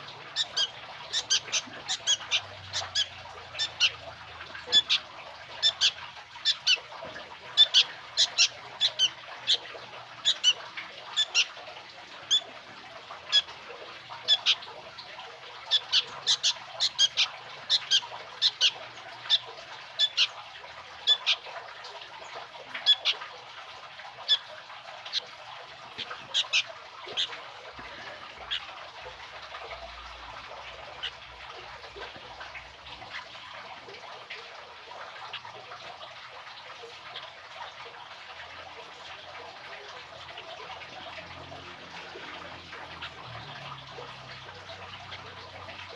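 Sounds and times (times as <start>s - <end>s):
bird calling: 0.0s - 4.0s, 7.5s - 11.6s, 15.7s - 20.3s, 25.9s - 28.6s.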